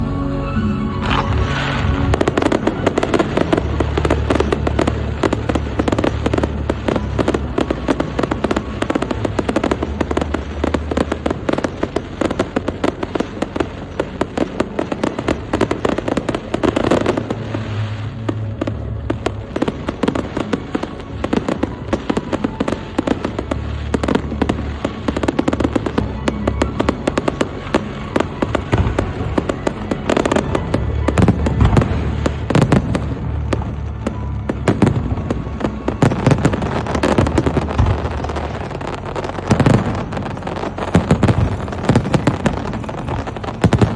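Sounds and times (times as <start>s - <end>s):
fireworks bangs and crackles: 0.0s - 43.9s
music playing: 0.0s - 43.9s.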